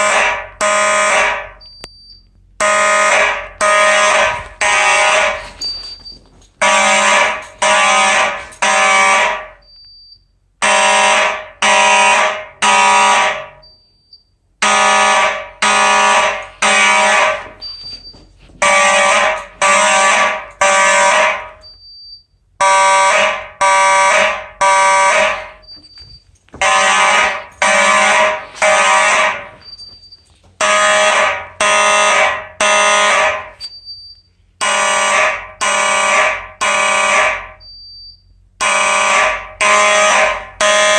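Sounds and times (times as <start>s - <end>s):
fire alarm horns buzzing: 0.0s - 40.9s.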